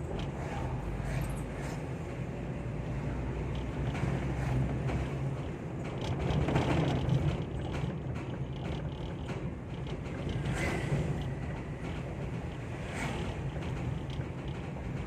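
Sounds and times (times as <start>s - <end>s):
vehicle rumble on road: 0.0s - 15.0s
bier creaking and clicking: 3.4s - 15.0s.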